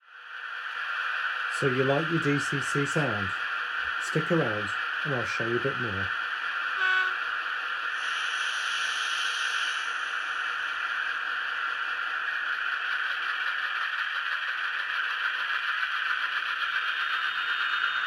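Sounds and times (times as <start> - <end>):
model train wheels rattling on track: 11.8 - 18.0.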